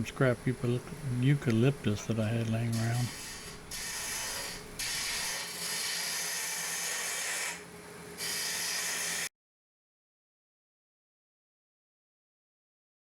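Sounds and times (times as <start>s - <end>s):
lathe tool shaving wood: 2.7s - 7.6s, 8.2s - 9.3s.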